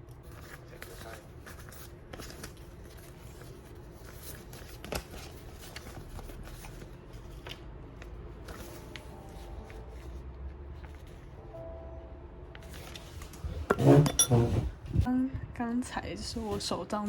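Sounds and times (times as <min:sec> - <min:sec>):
paper rustling: 0:00.1 - 0:11.3.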